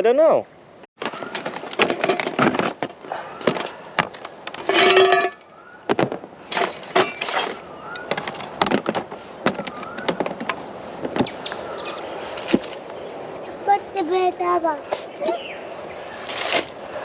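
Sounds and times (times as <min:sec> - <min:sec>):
campfire crackling: 0:11.4 - 0:17.0.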